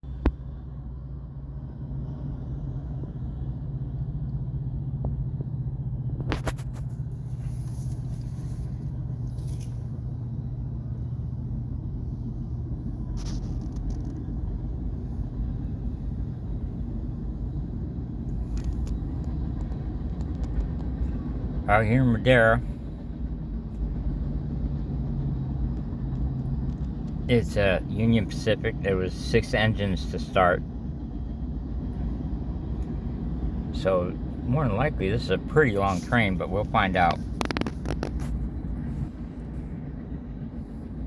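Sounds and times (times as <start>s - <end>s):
freight train passing: 0.6s - 13.3s, 14.2s - 41.0s.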